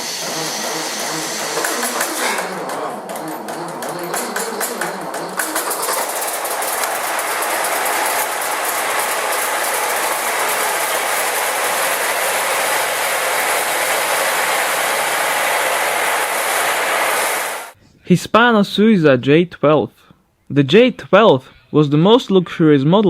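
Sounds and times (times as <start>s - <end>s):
engine running with mechanical clatter: 0.0s - 17.8s.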